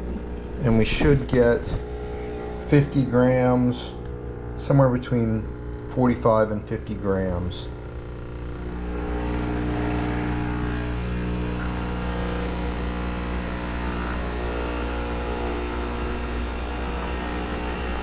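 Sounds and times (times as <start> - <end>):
espresso machine pump humming: 0.0 - 18.0.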